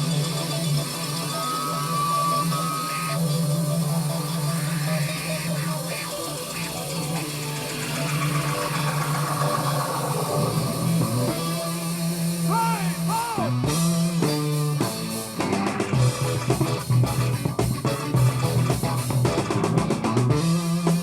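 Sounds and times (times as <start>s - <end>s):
drums: 0.0s - 21.0s
funk music over speakers: 0.0s - 21.0s.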